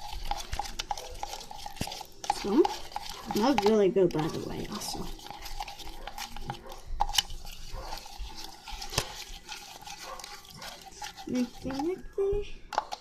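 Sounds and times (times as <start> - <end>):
slime squelching: 0.0 - 13.0
utensil clicking against cup: 12.7 - 13.0.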